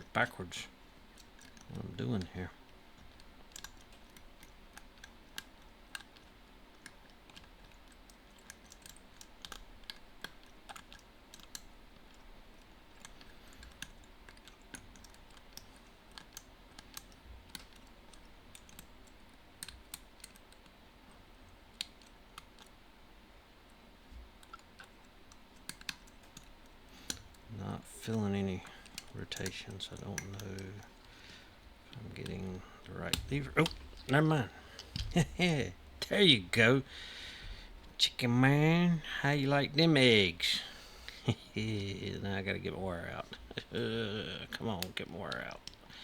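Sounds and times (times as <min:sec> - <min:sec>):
lock pick clicking inside padlock: 0:03.0 - 0:20.8.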